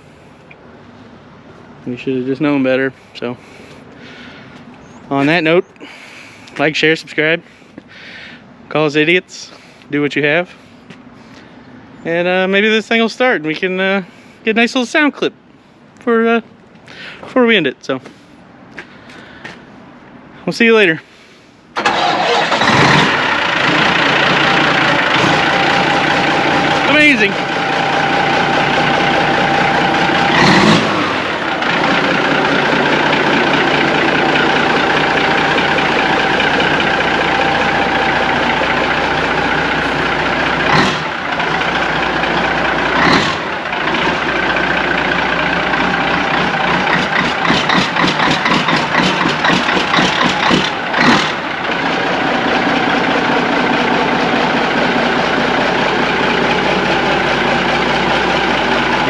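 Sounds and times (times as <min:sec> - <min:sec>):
diesel truck engine running: 0:21.8 - 0:59.0
short sharp engine bursts: 0:21.8 - 0:59.0.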